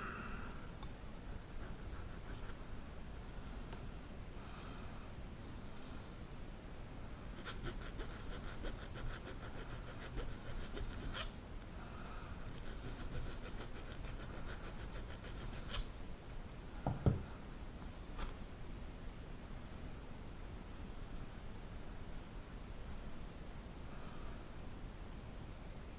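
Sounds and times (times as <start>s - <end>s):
small file rasping on metal: 7.4s - 11.3s, 12.6s - 15.9s.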